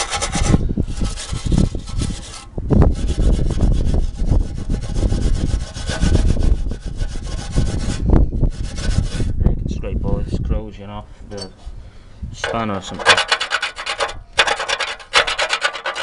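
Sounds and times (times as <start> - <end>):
scouring pad scrubbing metal: 0.0 - 9.3, 12.8 - 16.0.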